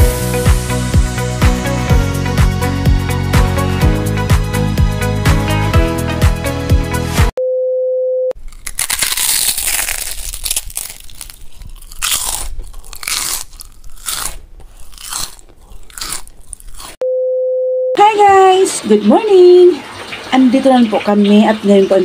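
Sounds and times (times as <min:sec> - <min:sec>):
intro music: 0:00.0 - 0:07.3
crunchy chewing of food: 0:08.4 - 0:17.0.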